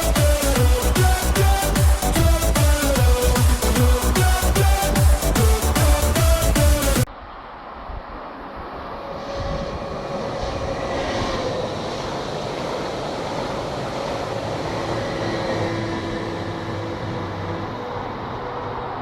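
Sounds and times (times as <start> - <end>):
train running on rails: 0.0 - 19.0.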